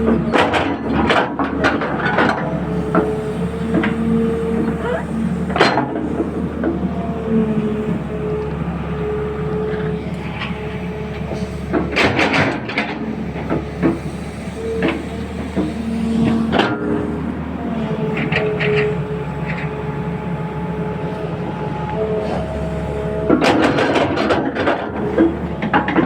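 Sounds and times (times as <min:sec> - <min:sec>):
metal clanks and knocks: 0:00.0 - 0:04.0, 0:11.4 - 0:14.0, 0:23.3 - 0:26.0
machine engine humming: 0:00.0 - 0:26.0.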